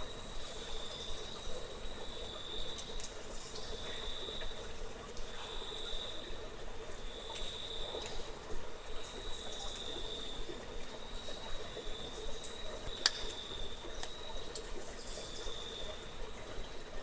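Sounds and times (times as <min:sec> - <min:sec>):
water drips: 0:00.0 - 0:17.0
high-pitched insect trill: 0:14.8 - 0:15.9.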